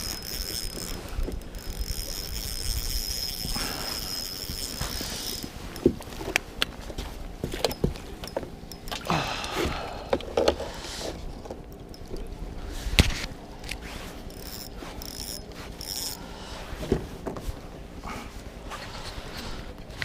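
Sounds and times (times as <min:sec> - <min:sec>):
mechanical scraping: 0:00.0 - 0:06.6, 0:12.7 - 0:16.3
fishing reel clicks and knocks: 0:00.0 - 0:06.7, 0:07.5 - 0:09.1, 0:11.4 - 0:12.3, 0:13.6 - 0:16.3.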